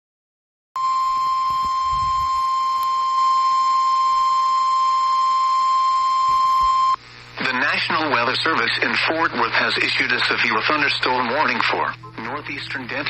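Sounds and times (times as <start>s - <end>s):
steady high-pitched alarm tone: 0.8s - 7.0s.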